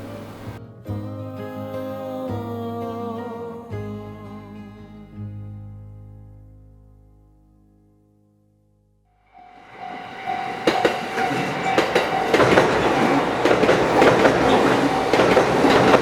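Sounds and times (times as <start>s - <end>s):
thin steady squeal: 9.3s - 16.0s
train wheels clicking on rails: 9.4s - 16.0s.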